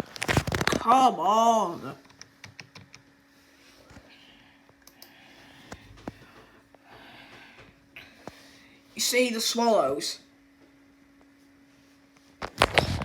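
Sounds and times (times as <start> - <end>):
faint steady hum: 0.0 - 13.0
computer mouse clicking: 2.0 - 3.0.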